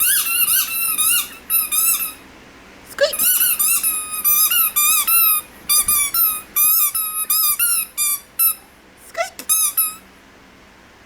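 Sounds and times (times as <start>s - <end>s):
squeaky toy squeaking: 0.0s - 2.2s, 3.1s - 8.6s, 9.4s - 10.0s.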